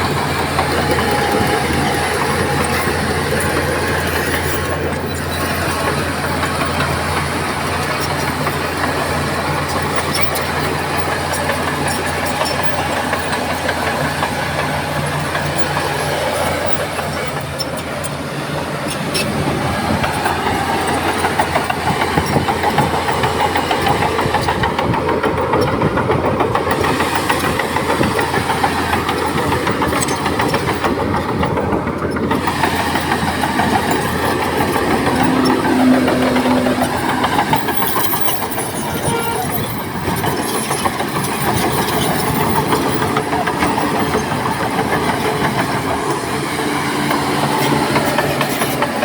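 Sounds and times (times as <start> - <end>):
bulldozer diesel engine: 0.0 - 49.0
clicks and clanks: 18.9 - 49.0.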